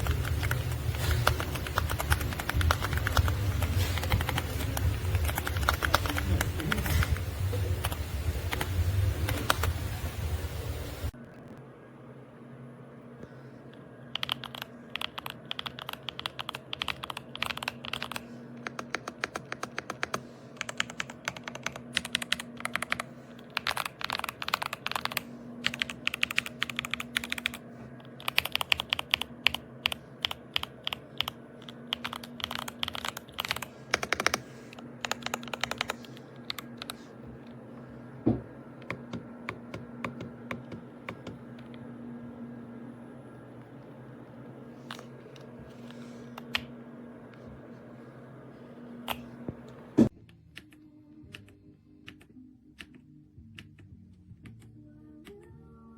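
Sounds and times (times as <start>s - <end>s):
mechanical keyboard typing: 0.0s - 7.1s, 14.1s - 37.0s.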